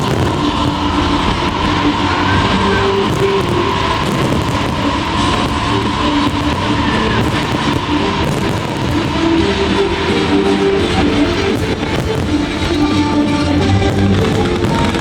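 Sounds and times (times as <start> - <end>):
dense noisy background: 0.0 - 15.0
loud guitar music: 0.0 - 15.0.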